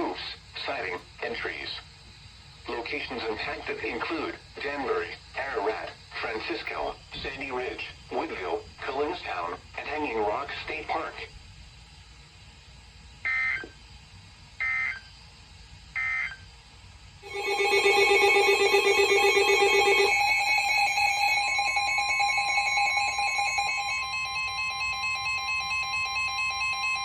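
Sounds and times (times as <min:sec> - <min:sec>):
warbling data bursts: 0:17.2 - 0:26.2
electronic alert tone: 0:17.2 - 0:27.0.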